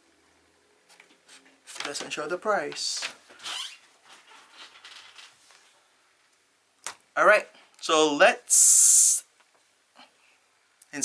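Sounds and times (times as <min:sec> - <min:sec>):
soft handling rustles: 0:00.8 - 0:06.4.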